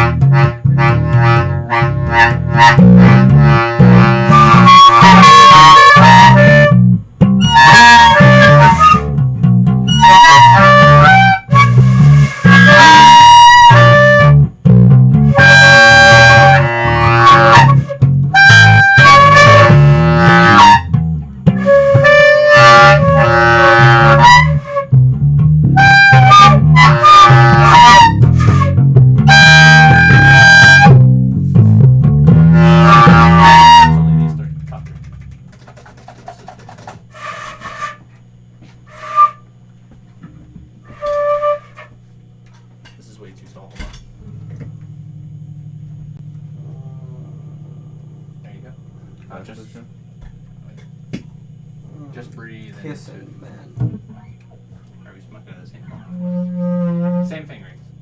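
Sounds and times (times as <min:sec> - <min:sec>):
reedy lead melody: 0:00.0 - 0:35.5, 0:40.8 - 0:41.9, 0:44.2 - 0:49.2, 0:56.0 - 0:57.7
pulsing bass line: 0:00.0 - 0:35.6, 0:43.8 - 0:54.4.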